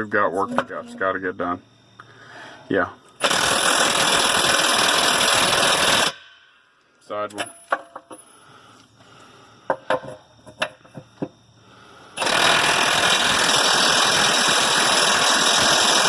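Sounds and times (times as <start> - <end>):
impact wrench hammering: 3.2 - 6.6.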